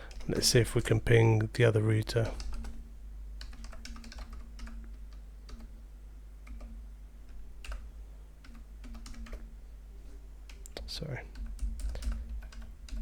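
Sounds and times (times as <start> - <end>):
steady low hum: 0.0 - 13.0
keyboard typing: 0.1 - 0.6, 2.1 - 2.8, 3.4 - 5.8, 6.4 - 9.5, 10.5 - 13.0.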